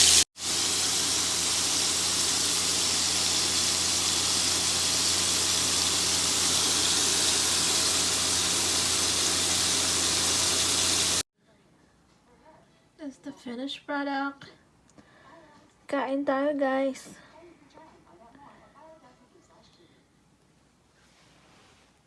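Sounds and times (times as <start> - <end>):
food sizzling in a frying pan: 0.0 - 11.3.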